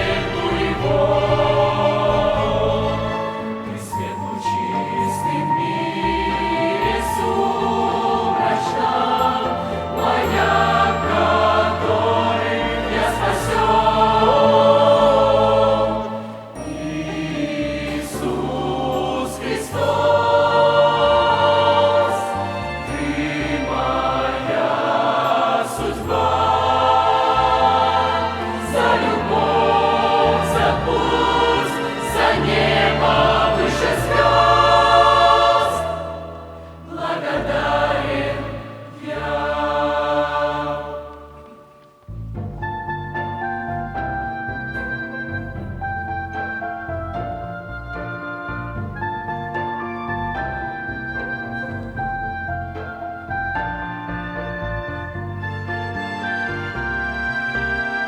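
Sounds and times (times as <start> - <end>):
youth choir singing: 0.0 - 41.8
low sustained instrumental notes: 0.0 - 58.0.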